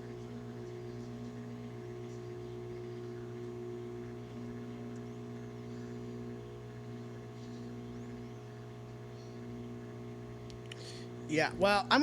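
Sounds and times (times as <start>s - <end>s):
faint pulsing tone: 0.0s - 10.4s
microwave oven hum: 0.0s - 12.0s.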